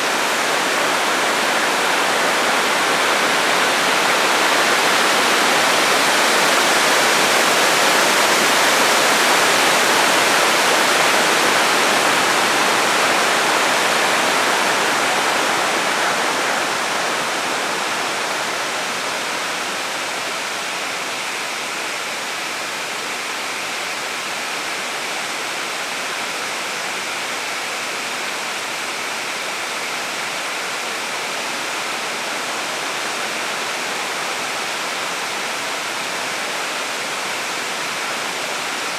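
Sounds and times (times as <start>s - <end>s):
waterfall rushing and splashing: 0.0s - 38.9s.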